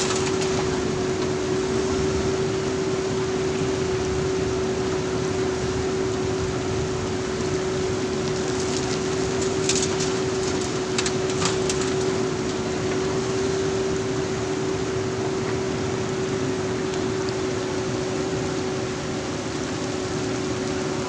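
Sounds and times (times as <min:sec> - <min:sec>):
diesel engine running with whine: 0:00.0 - 0:21.0.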